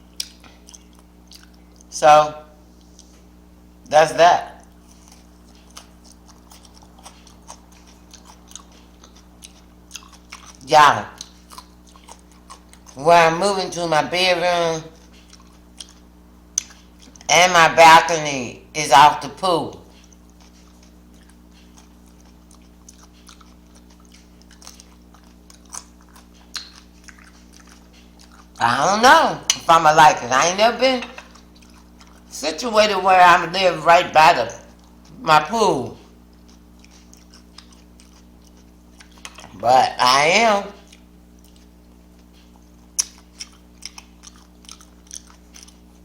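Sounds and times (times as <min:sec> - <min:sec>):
person chewing food: 0:00.0 - 0:01.9, 0:02.6 - 0:03.9, 0:04.5 - 0:13.5, 0:14.8 - 0:17.3, 0:19.8 - 0:35.2, 0:35.8 - 0:46.0
steady low hum: 0:00.0 - 0:46.0
wet mouth clicks and smacks: 0:16.6 - 0:17.3, 0:20.0 - 0:28.6, 0:36.4 - 0:39.6, 0:40.8 - 0:45.8.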